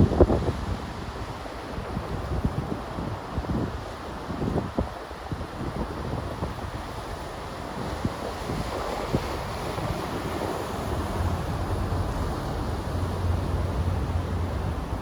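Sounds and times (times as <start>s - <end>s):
steady outdoor rush: 0.0s - 15.0s
wind buffeting microphone: 0.0s - 15.0s
low rumble: 10.0s - 15.0s.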